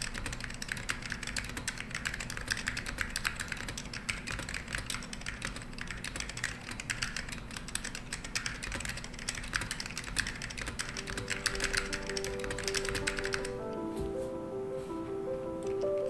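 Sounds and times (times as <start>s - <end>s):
mechanical keyboard typing: 0.0s - 14.0s, 15.4s - 16.0s
soft music tones: 10.7s - 16.0s.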